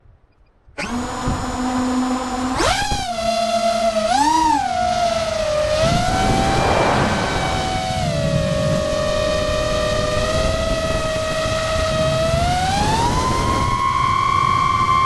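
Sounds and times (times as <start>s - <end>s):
drone propellers whining: 0.8s - 15.0s
rush of air: 5.7s - 9.2s.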